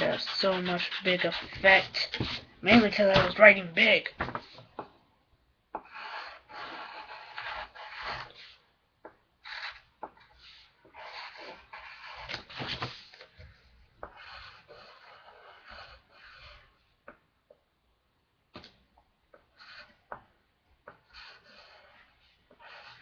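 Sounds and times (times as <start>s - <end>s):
pen scratching on paper: 0.0s - 4.6s, 5.8s - 8.6s, 9.4s - 13.2s, 14.0s - 16.8s, 19.4s - 20.2s, 20.8s - 23.0s.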